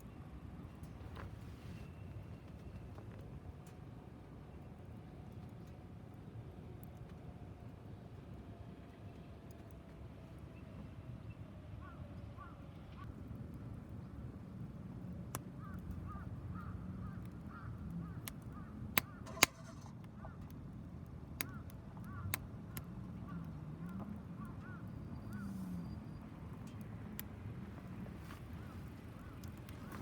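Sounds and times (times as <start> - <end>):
fire low rumble: 0.4 - 11.2, 13.0 - 30.0
fire crackles and pops: 13.2 - 24.6, 26.4 - 30.0.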